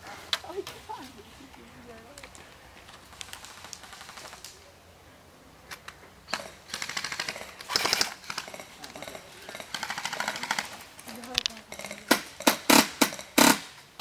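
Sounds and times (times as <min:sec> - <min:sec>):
airsoft guns firing bursts: 0:06.3 - 0:10.8, 0:12.1 - 0:13.8.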